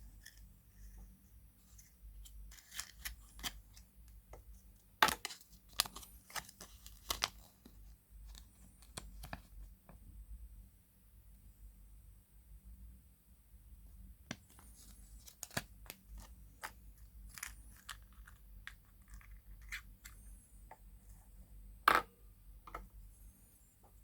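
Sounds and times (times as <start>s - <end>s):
wrapper crinkling and tearing: 2.5s - 3.6s, 5.1s - 7.5s, 14.8s - 16.3s.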